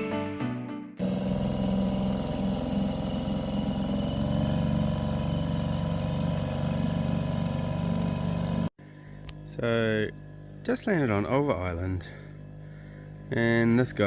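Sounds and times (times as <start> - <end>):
boat engine running: 1.0 - 8.7.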